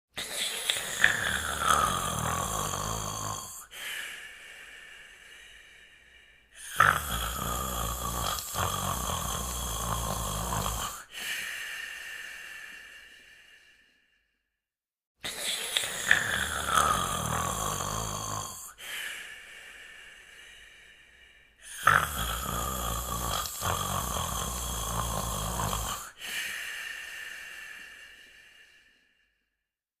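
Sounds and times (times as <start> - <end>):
loud snoring: 0.2 - 3.8, 6.6 - 11.4, 15.2 - 18.9, 21.6 - 26.4
quiet breathing: 0.2 - 14.3, 15.2 - 29.4.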